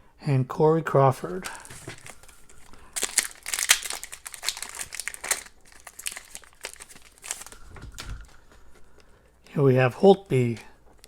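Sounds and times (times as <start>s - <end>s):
foil wrapper crinkling: 1.2s - 8.5s.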